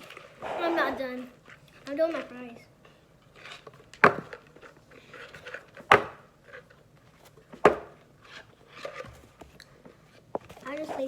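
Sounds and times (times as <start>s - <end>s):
sharp knocks: 5.9s - 6.2s.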